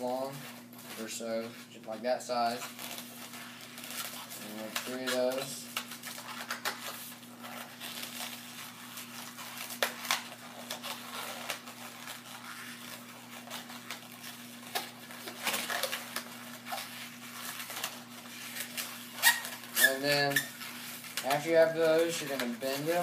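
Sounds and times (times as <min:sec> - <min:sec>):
rubber balloon creaking and crinkling: 0:00.0 - 0:23.0.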